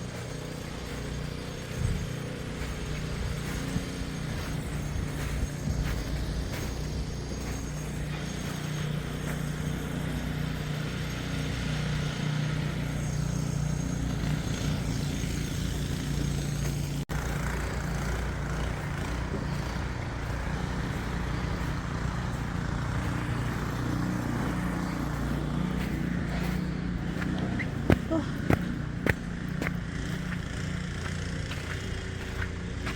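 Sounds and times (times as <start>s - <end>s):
engine running steadily: 0.0s - 32.9s.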